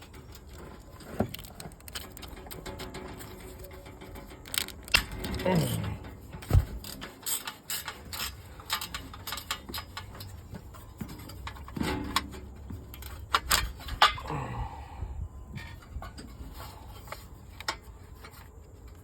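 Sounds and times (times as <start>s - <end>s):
metal tools clinking: 0.0s - 14.5s.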